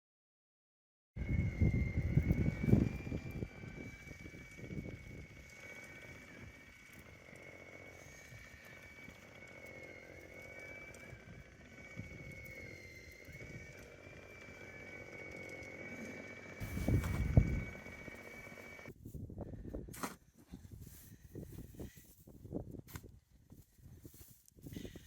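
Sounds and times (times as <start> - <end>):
small engine running: 1.2 - 18.9
thin high whine: 1.2 - 18.9.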